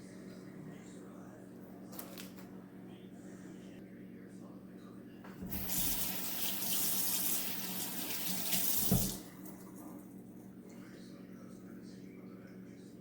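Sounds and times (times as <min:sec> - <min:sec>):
tap running into a sink: 0:05.4 - 0:09.3.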